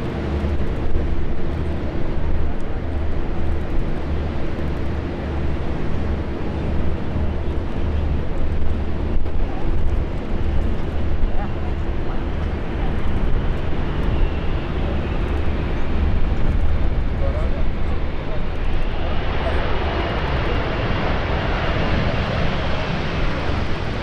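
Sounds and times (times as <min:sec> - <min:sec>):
jet airliner rumble: 0:00.0 - 0:24.0.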